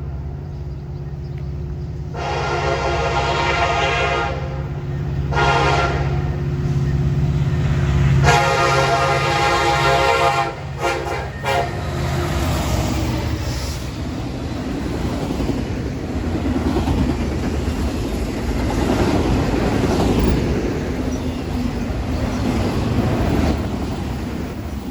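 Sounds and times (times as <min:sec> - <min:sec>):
low train rumble: 0:00.0 - 0:24.9
locomotive air horn blasts: 0:02.1 - 0:06.4, 0:08.2 - 0:12.2.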